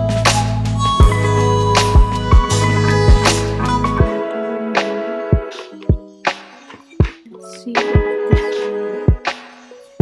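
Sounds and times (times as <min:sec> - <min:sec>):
deep bass: 0:00.0 - 0:04.0
held synth tones: 0:00.0 - 0:04.8
kick drum: 0:01.0 - 0:01.3, 0:02.0 - 0:03.3, 0:05.3 - 0:06.1, 0:08.0 - 0:09.3.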